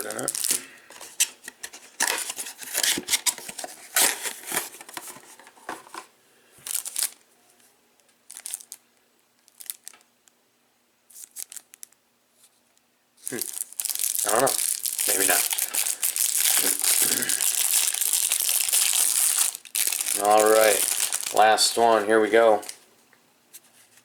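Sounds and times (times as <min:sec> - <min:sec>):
plastic wrapping crinkling and tearing: 0:00.0 - 0:05.4, 0:06.6 - 0:07.2, 0:08.3 - 0:08.8, 0:09.4 - 0:10.1, 0:11.1 - 0:12.0, 0:13.2 - 0:22.8
cards being handled: 0:14.2 - 0:22.8.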